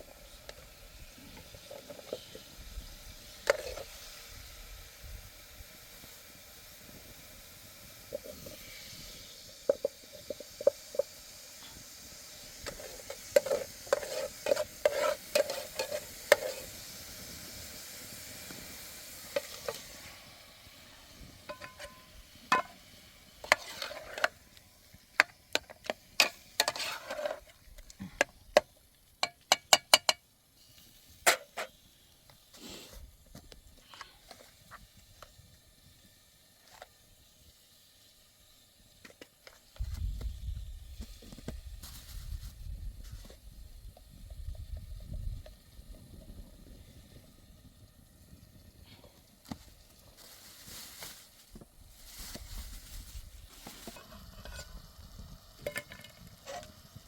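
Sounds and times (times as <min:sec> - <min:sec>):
food sizzling in a pan: 0:00.0 - 0:57.0
utensil scraping a pan: 0:03.4 - 0:04.0, 0:12.5 - 0:17.0, 0:19.2 - 0:20.0, 0:21.5 - 0:22.8, 0:23.4 - 0:24.4, 0:25.5 - 0:27.6, 0:53.6 - 0:55.0, 0:55.6 - 0:56.8.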